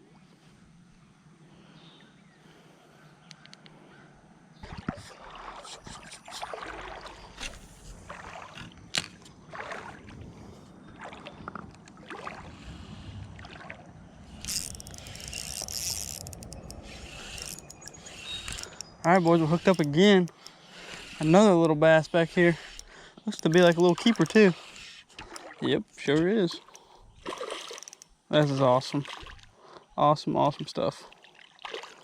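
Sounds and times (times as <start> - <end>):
creek water splashing: 4.6 - 32.0
sharp clicks: 14.4 - 28.2.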